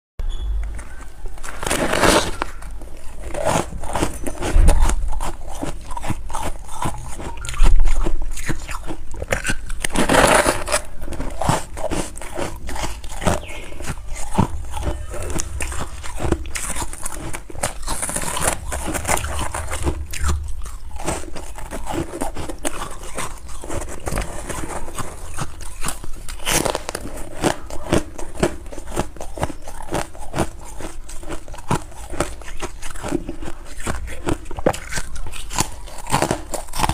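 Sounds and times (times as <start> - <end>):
crunching frost: 0.7 - 36.9
low thumps: 3.8 - 6.0, 13.7 - 22.8.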